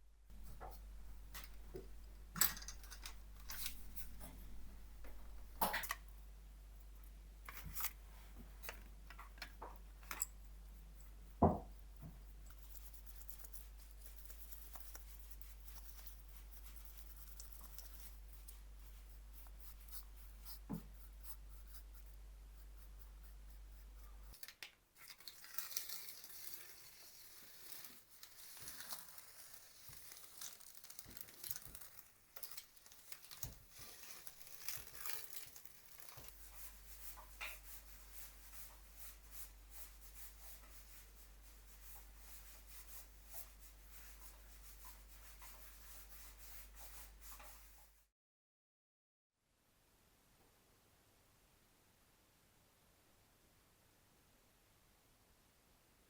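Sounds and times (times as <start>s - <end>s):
low steady hum: 0.0s - 24.4s
soft hiss: 0.0s - 48.0s.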